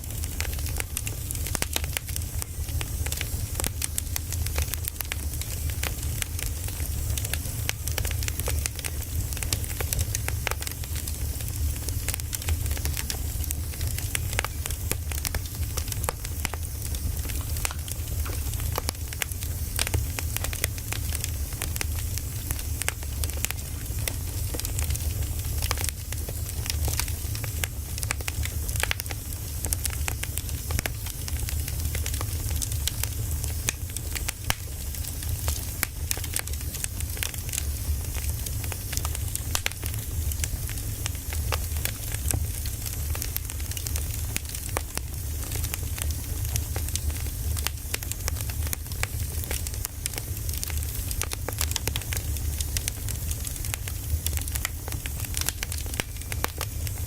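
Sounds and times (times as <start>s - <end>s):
firewood crackling and popping: 0.0s - 57.0s
low rumble of fire: 0.0s - 57.0s.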